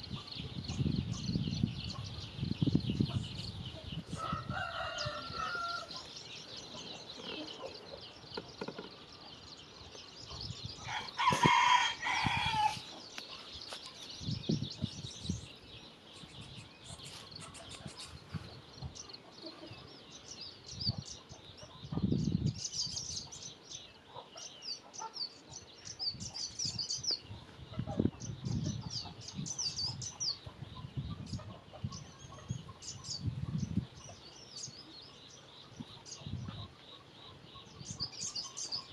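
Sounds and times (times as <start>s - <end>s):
small birds chirping: 0.0s - 38.9s
rooster crowing: 4.2s - 6.0s, 10.8s - 12.9s.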